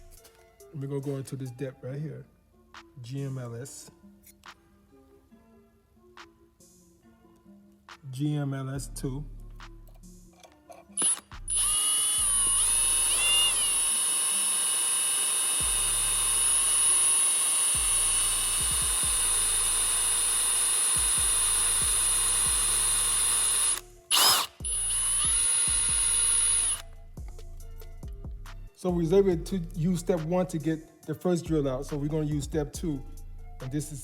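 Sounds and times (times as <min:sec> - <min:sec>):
power drill whine: 0:11.0 - 0:26.9.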